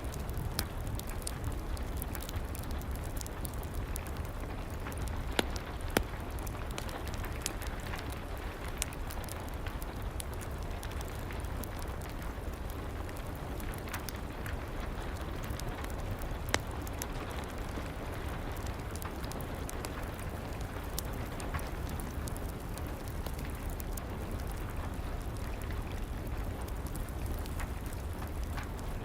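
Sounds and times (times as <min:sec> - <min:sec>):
steady rain: 0:00.0 - 0:29.0
wood fire crackling: 0:00.0 - 0:29.0.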